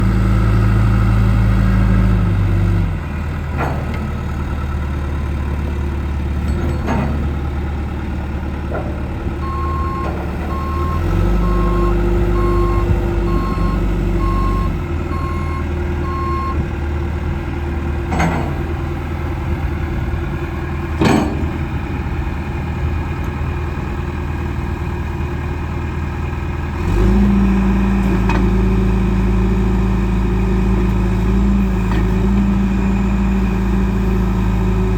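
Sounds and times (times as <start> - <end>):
backhoe diesel engine running: 0.0 - 34.9
reversing alarm beeping: 9.4 - 16.6
sharp metallic knocks: 21.0 - 21.7.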